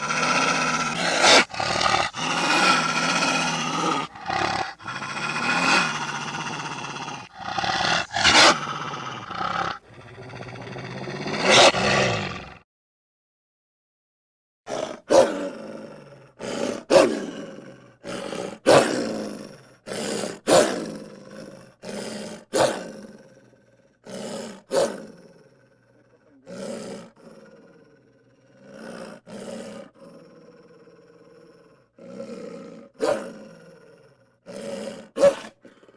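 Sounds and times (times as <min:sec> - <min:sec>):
animal roaring sound effects: 0:00.0 - 0:12.6.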